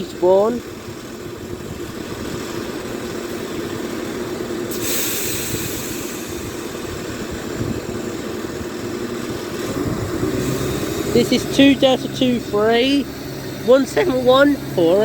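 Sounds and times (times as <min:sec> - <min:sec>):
diesel train engines running: 0:00.0 - 0:15.0
loud hiss: 0:04.7 - 0:07.3, 0:09.6 - 0:13.5.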